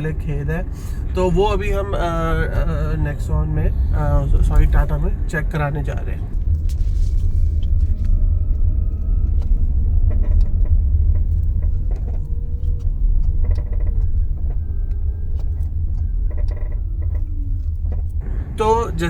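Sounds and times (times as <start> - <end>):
low road rumble: 0.0 - 19.0
clattering clicks from car front: 7.6 - 18.2.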